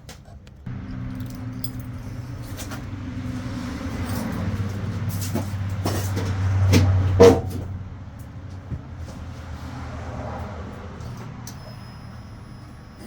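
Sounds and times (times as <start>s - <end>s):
keys jingling: 0.7s - 6.1s
heater blower motor humming: 0.7s - 9.0s.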